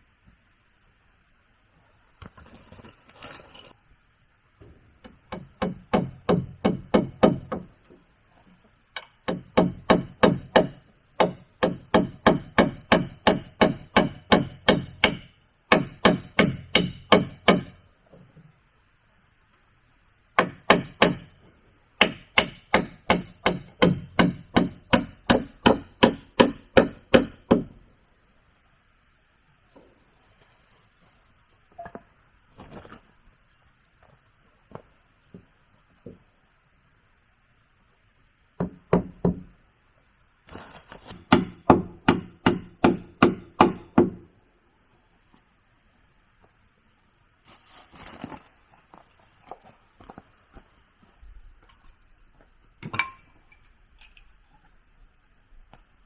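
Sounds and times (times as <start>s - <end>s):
hammering on wood: 5.0s - 7.7s, 9.0s - 17.8s, 20.4s - 21.4s, 22.0s - 27.8s, 38.6s - 39.5s, 41.1s - 44.2s.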